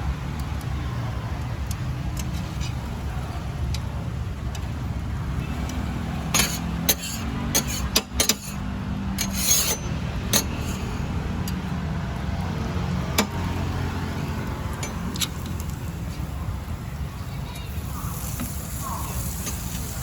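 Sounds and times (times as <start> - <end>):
cooking utensils clicking: 5.6 - 11.6
utensil rasping scrape: 6.4 - 11.1.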